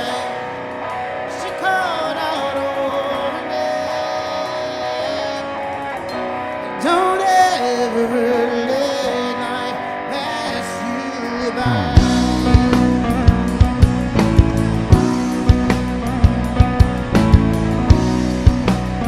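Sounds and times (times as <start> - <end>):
person singing: 0.0 - 18.7
electric guitar: 0.0 - 19.0
bass notes: 11.6 - 19.0
drum hits: 12.0 - 19.0.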